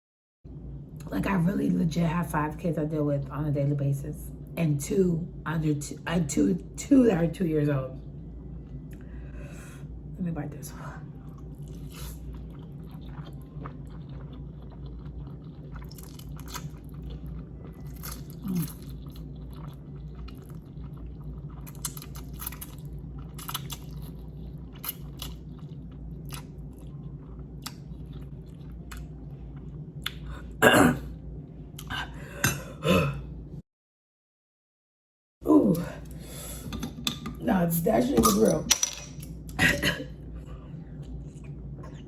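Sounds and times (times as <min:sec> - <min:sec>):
person chewing noodles: 0:11.2 - 0:30.6
loud throat sound: 0:30.6 - 0:31.1, 0:32.4 - 0:33.3.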